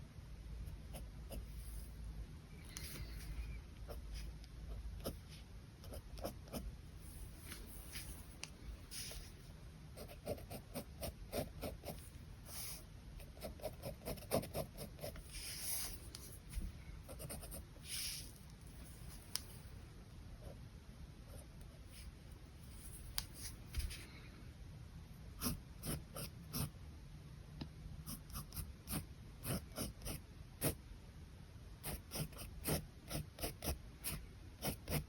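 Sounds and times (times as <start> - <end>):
pen scratching on paper: 5.0 - 8.3, 10.0 - 19.4, 25.4 - 26.7, 28.1 - 30.8, 31.8 - 35.0.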